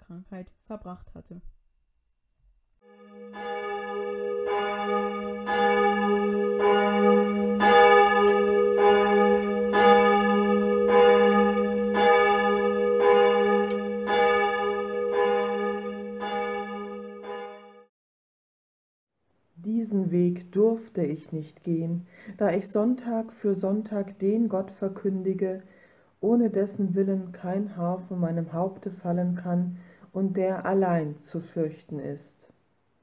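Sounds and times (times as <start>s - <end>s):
church bell tolling: 2.9s - 17.9s.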